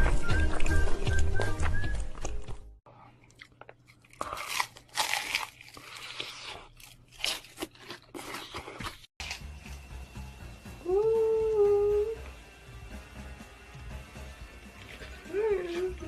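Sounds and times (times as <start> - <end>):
person chewing crunchy food: 2.9 - 9.8.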